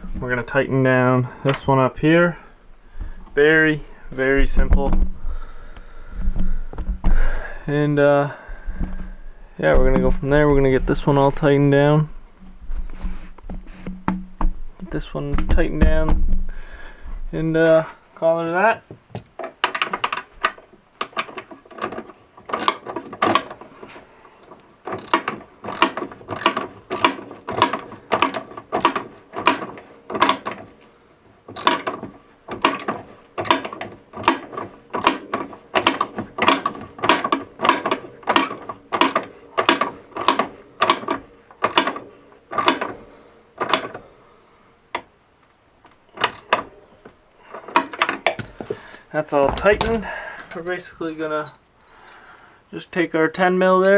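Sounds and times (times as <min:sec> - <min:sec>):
ratchet wrench clicking: 0:24.9 - 0:30.4.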